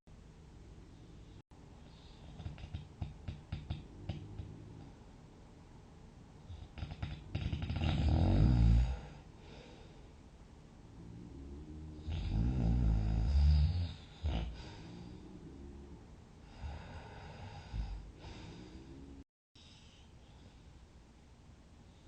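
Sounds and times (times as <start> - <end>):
person snoring loudly: 6.6 - 9.2, 11.0 - 15.9
soft breathing: 8.9 - 10.3, 13.8 - 21.0.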